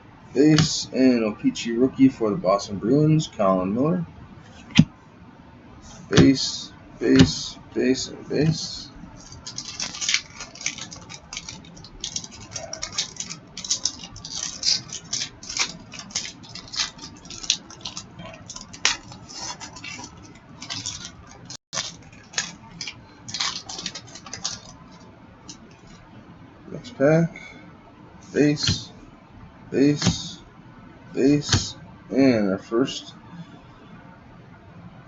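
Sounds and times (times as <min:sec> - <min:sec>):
cards and foil wrappers rustling: 0:08.4 - 0:26.0.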